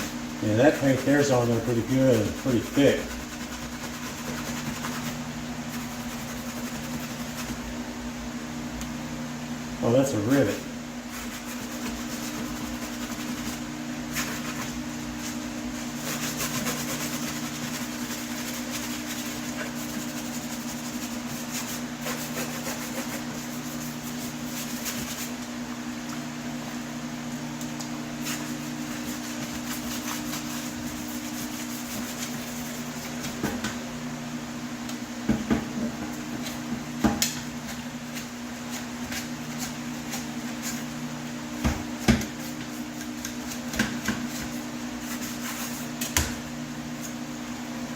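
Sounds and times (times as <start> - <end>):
paint scraping off metal: 0.0 - 7.6
steady low hum: 0.0 - 47.9.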